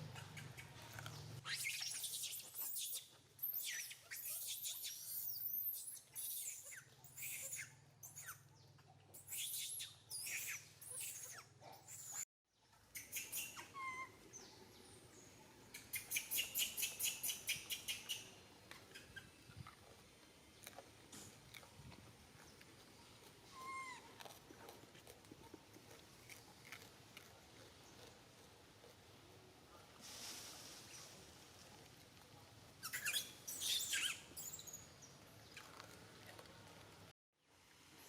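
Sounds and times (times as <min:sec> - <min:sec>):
baby monkey squeaking: 0:01.4 - 0:12.2, 0:12.9 - 0:14.2, 0:15.8 - 0:18.3, 0:23.5 - 0:24.1, 0:32.8 - 0:34.8.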